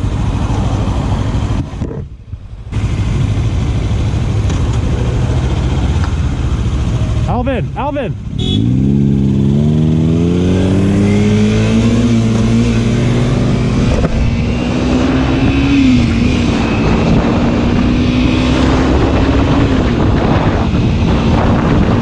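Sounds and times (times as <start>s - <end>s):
motorcycle engine revving: 2.7s - 22.0s
wind noise rushing: 8.8s - 22.0s.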